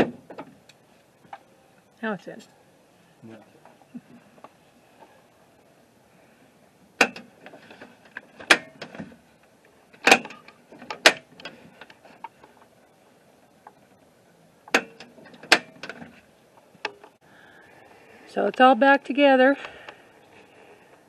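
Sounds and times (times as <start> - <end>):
truck door latch clicking: 10.0 - 11.3.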